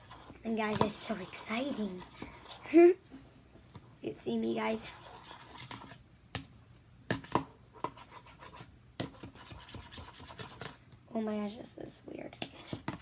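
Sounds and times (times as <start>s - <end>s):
utensil scraping a bowl: 4.8s - 6.0s.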